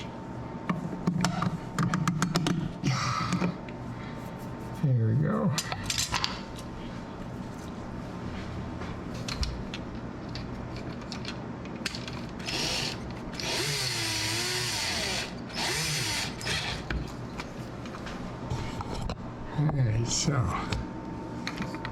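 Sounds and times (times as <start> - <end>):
power drill driving screws: 12.4 - 16.8.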